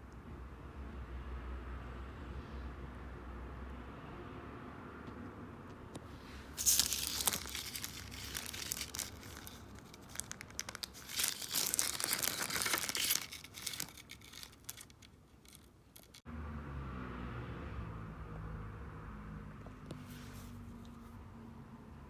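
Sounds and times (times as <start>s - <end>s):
crackling rustling with clicks: 6.5s - 16.2s.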